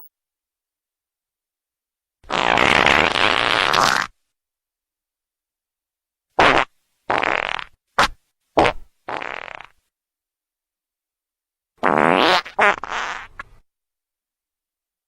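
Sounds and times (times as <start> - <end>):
wet fart sound effects: 2.3 - 4.2, 6.4 - 9.8, 11.8 - 13.6.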